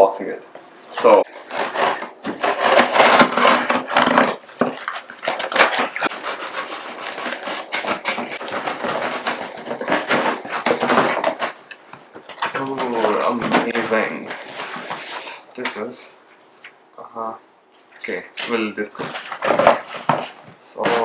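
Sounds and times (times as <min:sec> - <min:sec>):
box scraping and rubbing: 0:00.8 - 0:11.6, 0:12.3 - 0:15.4, 0:18.8 - 0:21.0.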